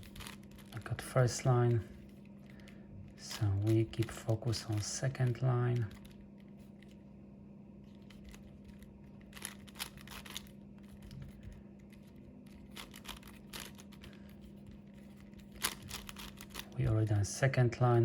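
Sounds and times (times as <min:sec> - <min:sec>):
puzzle cube clicking and scraping: 0:00.0 - 0:06.2, 0:07.9 - 0:11.1, 0:11.9 - 0:14.4, 0:15.0 - 0:16.8
steady low hum: 0:00.0 - 0:18.0.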